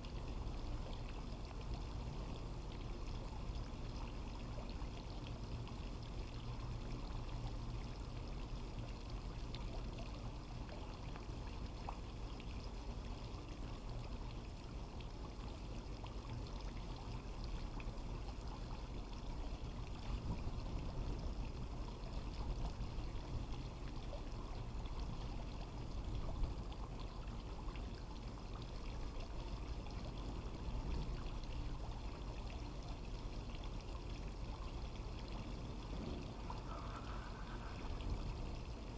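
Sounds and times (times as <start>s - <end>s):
water pouring and running: 0.0s - 38.9s
low hum: 16.2s - 38.9s.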